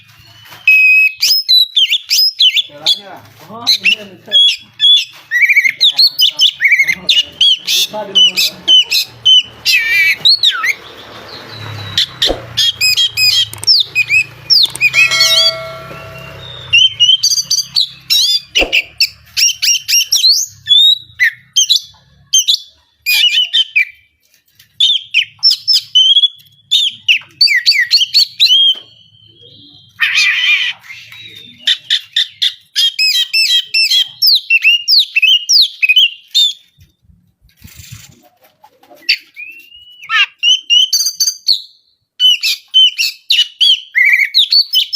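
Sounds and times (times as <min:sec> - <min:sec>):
songbird singing: 0:03.8 - 0:21.6
low hum: 0:11.8 - 0:18.0
brief steady tone: 0:14.7 - 0:16.9.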